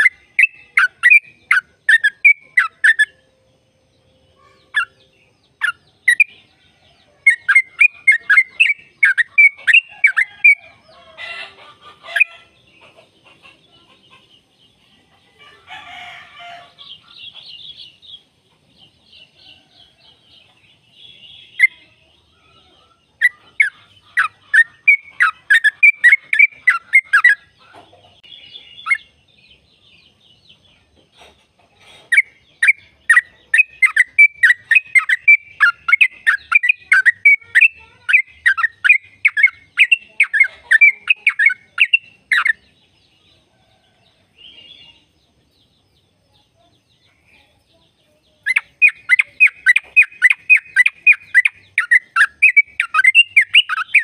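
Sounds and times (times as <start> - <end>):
bird singing chattering notes: 0.0 - 6.6, 7.2 - 10.6, 20.4 - 21.9, 23.2 - 30.6, 31.2 - 42.8, 44.4 - 54.0.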